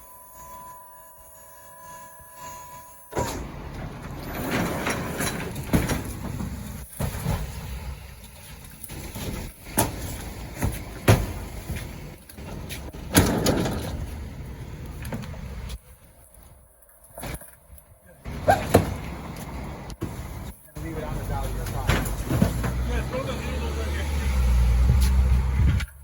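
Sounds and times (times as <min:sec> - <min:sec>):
sharp knocks and clunks: 0:09.2 - 0:11.9, 0:21.7 - 0:22.9.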